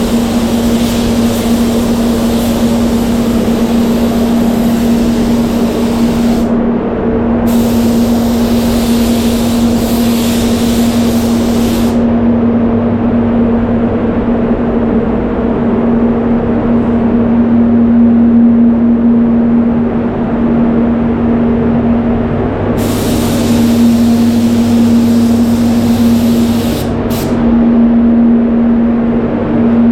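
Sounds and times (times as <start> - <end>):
spray gun hissing: 0.0 - 6.6, 7.5 - 12.1, 22.8 - 27.4
extraction fan humming: 0.0 - 29.9.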